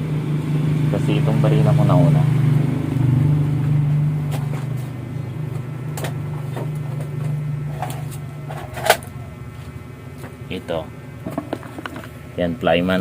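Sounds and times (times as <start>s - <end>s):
low engine hum: 0.0s - 13.0s
objects handled clicks and knocks: 11.2s - 12.2s.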